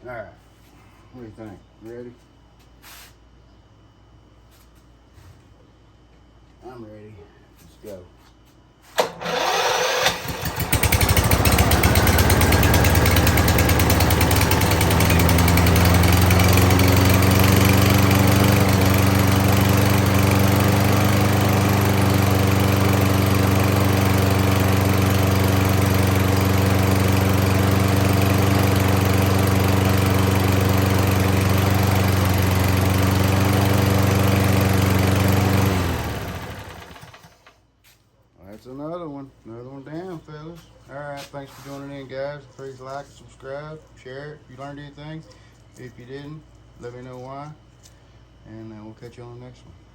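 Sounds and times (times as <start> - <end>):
lawn mower engine running: 9.0 - 37.5.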